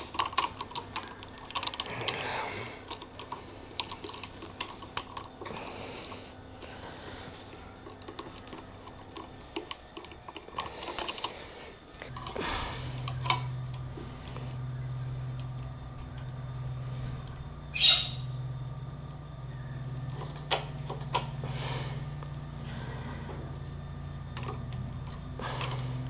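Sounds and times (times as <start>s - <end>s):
hand tools clicking and knocking: 0.0s - 6.3s, 7.5s - 16.6s, 24.2s - 26.0s
steady low hum: 0.0s - 26.0s.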